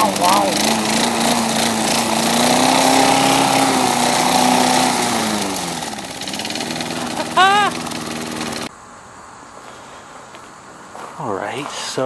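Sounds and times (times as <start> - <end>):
lawn mower engine revving: 0.0 - 8.7.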